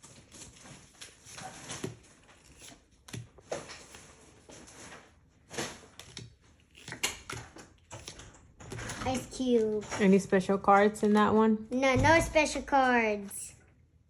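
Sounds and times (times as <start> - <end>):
cards rustling and tapping: 0.0 - 9.8.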